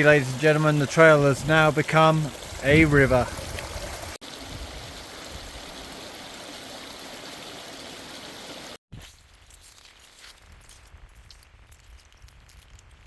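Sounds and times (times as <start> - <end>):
running water rushing: 0.0 - 8.8.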